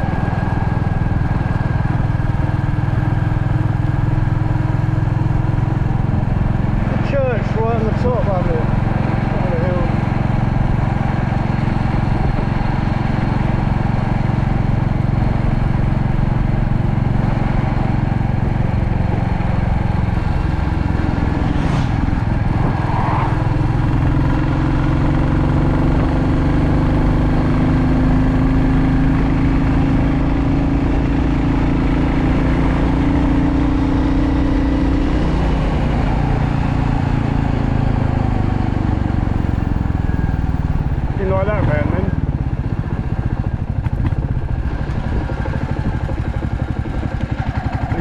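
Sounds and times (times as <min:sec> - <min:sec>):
motorcycle engine running: 0:00.0 - 0:48.0.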